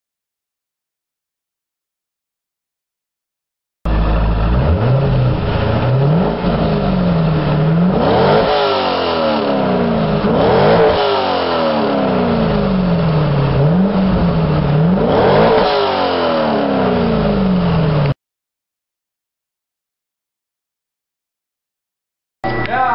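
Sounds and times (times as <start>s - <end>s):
car engine revving: 3.9s - 18.2s.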